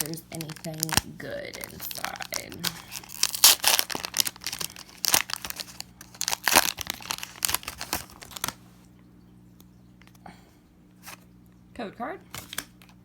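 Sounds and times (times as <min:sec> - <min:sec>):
foil wrapper crackling: 0:00.0 - 0:08.7.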